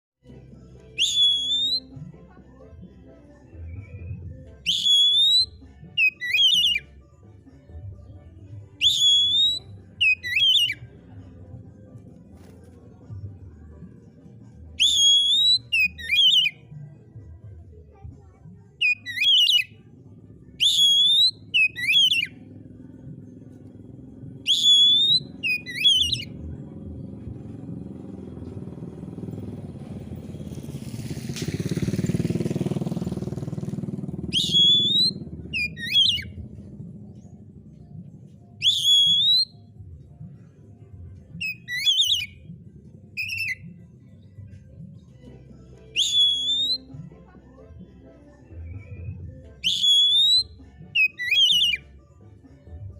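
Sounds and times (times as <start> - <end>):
bird singing whistled phrases: 1.0 - 2.0, 3.7 - 6.9, 8.8 - 10.9, 14.8 - 16.6, 18.8 - 19.8, 20.6 - 22.4, 24.4 - 26.4, 34.3 - 36.4, 38.6 - 39.6, 41.4 - 42.5, 43.2 - 43.8, 46.0 - 47.0, 48.6 - 51.8
low rumble: 26.2 - 38.6.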